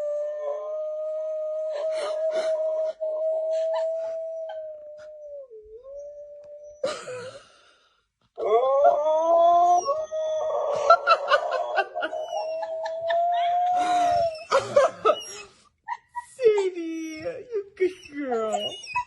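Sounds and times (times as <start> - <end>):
dog howling: 8.4 - 15.3.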